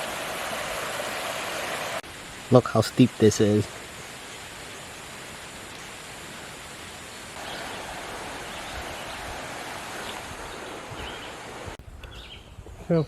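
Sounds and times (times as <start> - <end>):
mountain brook rushing: 0.0 - 11.8.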